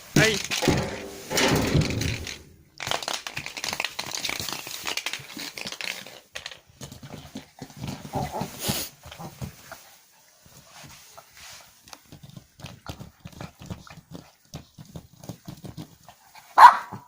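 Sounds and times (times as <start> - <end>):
scuffling and crinkling toy: 2.9 - 17.0
small dog noises: 16.2 - 17.0.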